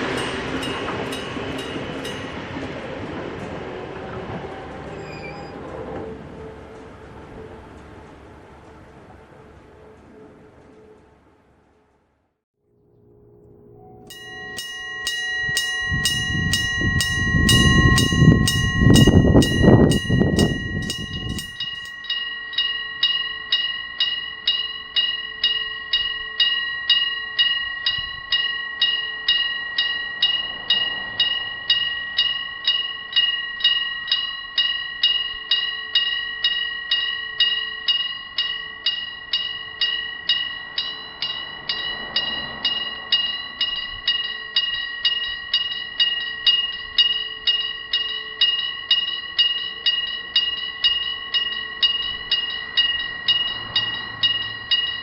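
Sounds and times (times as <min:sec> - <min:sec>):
level crossing electric bell ringing: 0:00.0 - 0:02.7, 0:13.8 - 0:55.0.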